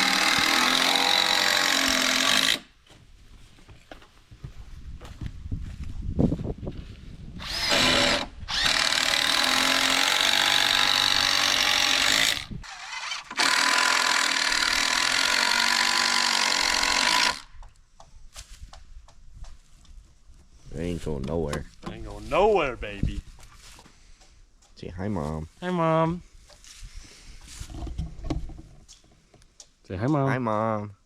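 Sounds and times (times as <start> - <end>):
power drill driving screws into wood: 0.0 - 2.7, 7.4 - 17.5.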